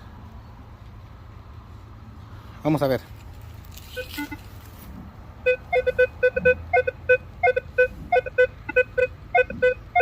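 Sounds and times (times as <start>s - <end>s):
metal detector beeps: 3.9s - 4.4s, 5.4s - 10.0s.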